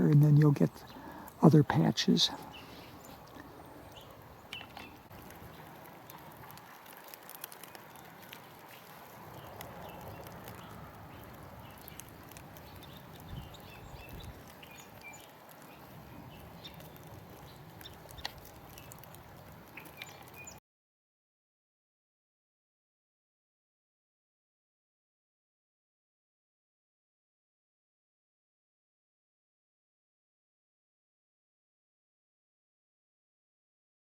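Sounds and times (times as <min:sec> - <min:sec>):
distant bird chirps: 0:00.0 - 0:05.8, 0:07.6 - 0:19.1, 0:19.7 - 0:20.6.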